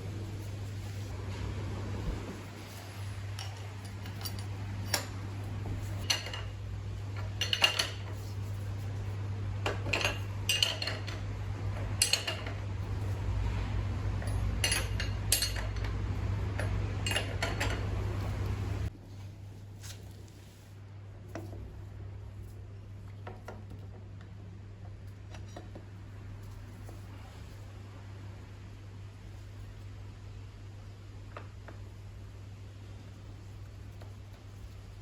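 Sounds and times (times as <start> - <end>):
steady low hum: 0.0 - 35.0
light metallic clinks and knocks: 3.2 - 8.3.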